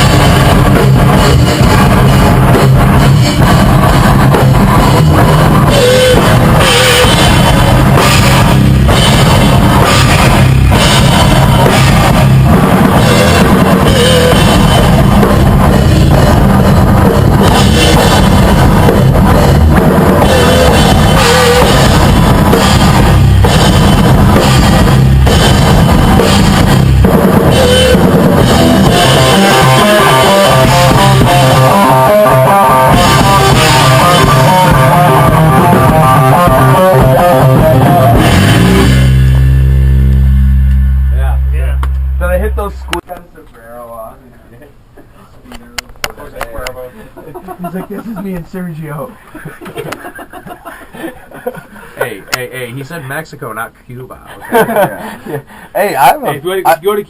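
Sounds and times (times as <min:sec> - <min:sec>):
cymbals: 0:00.0 - 0:43.0
bass drum: 0:00.0 - 0:43.1
rock band playing: 0:00.0 - 0:43.1.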